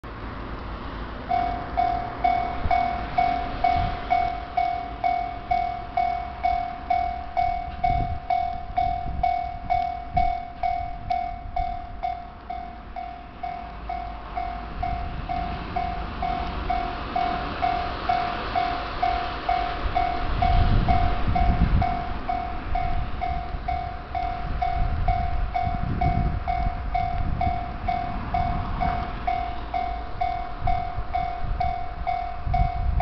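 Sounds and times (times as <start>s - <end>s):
train rumble: 0.0s - 33.0s
level-crossing bell dinging: 1.3s - 33.0s.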